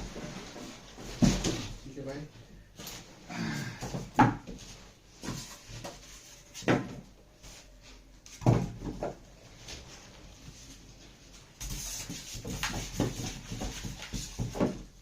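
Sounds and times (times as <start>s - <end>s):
cardboard box knocks and thumps: 1.0s - 1.8s, 11.6s - 15.0s.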